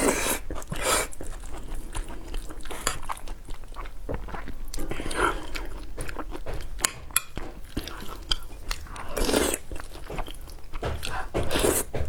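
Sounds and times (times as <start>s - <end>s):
crunchy biting and chewing: 0.0s - 12.0s.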